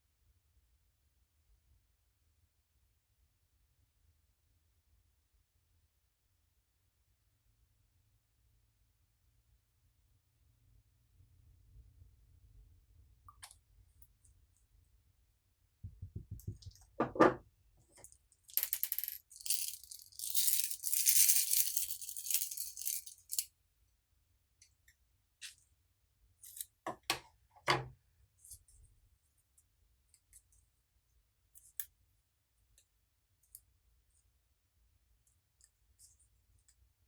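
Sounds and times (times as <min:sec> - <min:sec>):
small hard objects rattling: 0:18.5 - 0:23.5.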